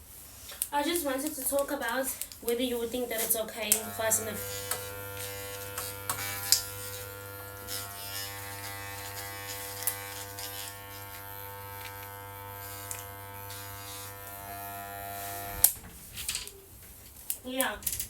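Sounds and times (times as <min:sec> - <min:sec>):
electric trimmer buzzing: 0:03.6 - 0:15.8
trimmer switch click: 0:03.7 - 0:06.8.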